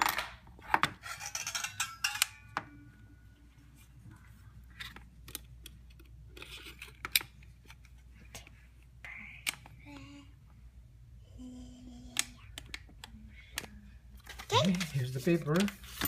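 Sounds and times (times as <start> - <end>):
faint ringing: 1.0 - 3.8.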